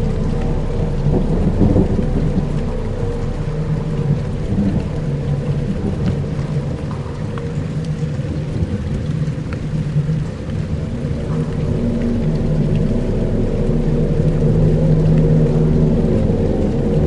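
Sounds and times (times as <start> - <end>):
deep thunder-like rumble: 0.0 - 17.0
low drone of held tones: 0.0 - 17.0
rain-like hiss: 0.0 - 17.0.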